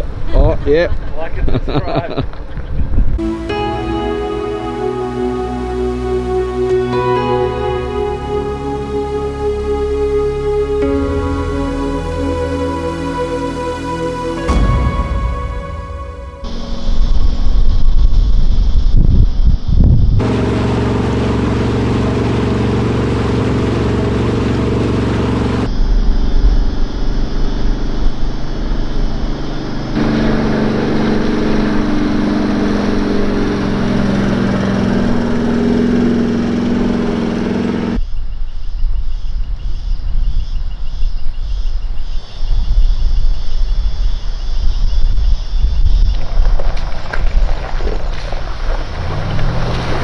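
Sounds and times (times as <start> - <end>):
wind buffeting microphone: 0.0 - 3.2, 16.7 - 20.3, 25.7 - 50.0
vehicle engine running: 3.1 - 18.2, 20.2 - 38.0, 46.6 - 50.0.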